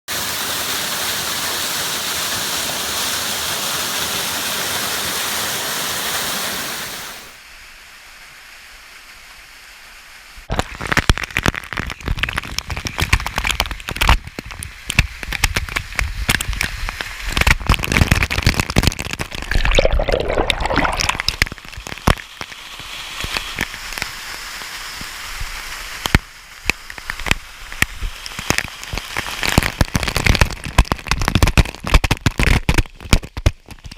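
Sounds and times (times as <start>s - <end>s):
waterfall rushing: 0.1s - 7.4s
sharp crackly pops: 10.5s - 33.9s.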